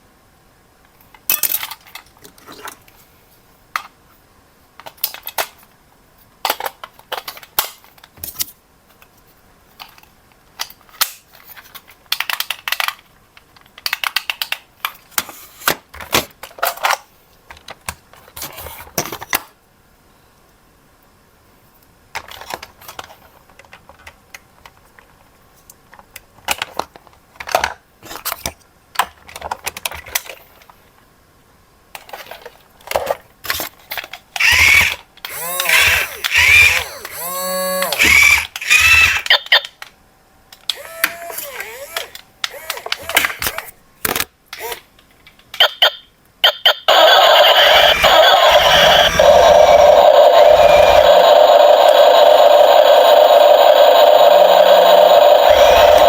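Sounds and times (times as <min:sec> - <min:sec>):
plastic parts clicking and rattling: 0:40.6 - 0:45.5.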